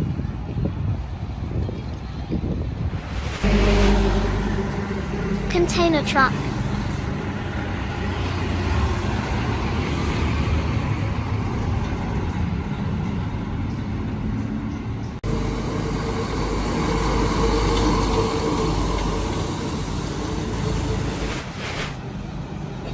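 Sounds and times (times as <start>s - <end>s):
road noise: 0.0s - 22.9s
truck engine rumble: 0.8s - 22.9s
steady hum: 2.8s - 8.2s.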